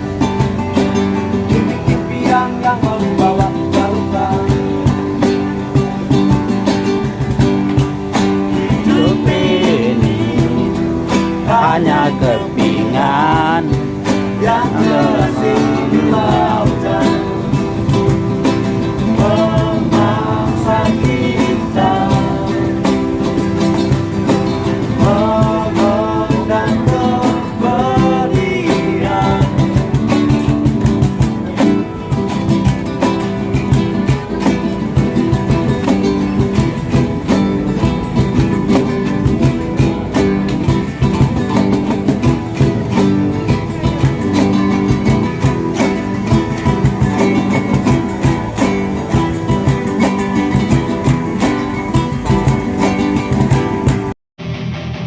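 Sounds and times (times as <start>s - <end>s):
acoustic guitar strumming: 0.0s - 55.0s
person singing: 1.4s - 5.2s, 8.3s - 23.5s, 24.8s - 30.0s.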